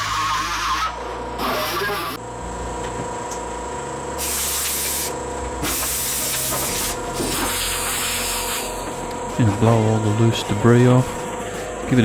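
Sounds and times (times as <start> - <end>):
compressed air blowgun hissing: 4.2 - 8.8.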